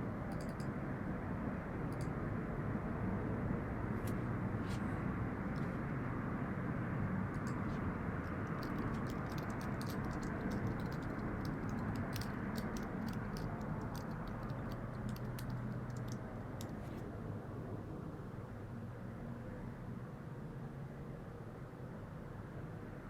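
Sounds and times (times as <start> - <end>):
low hum and rumble: 0.0 - 20.3
light clicks: 0.3 - 0.7, 7.3 - 16.9.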